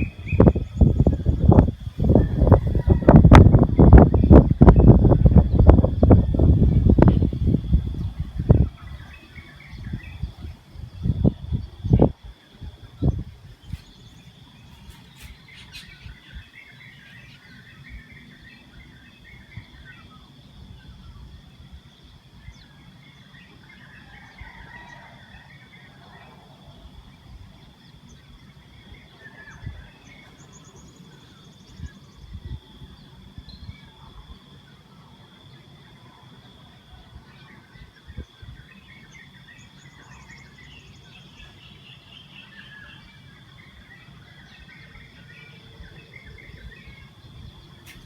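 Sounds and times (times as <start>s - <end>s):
small birds chirping: 0.0s - 21.2s.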